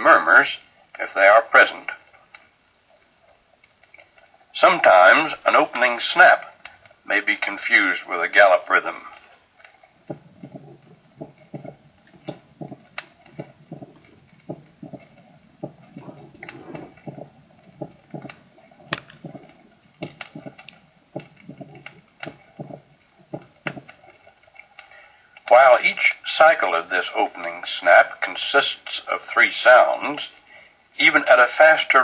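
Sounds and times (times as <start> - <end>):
heartbeat through stethoscope: 10.0 - 24.2.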